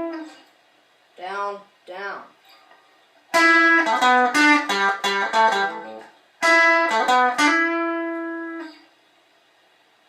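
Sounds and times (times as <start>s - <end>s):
electric guitar picking single notes: 0.0s - 0.5s, 3.3s - 8.9s.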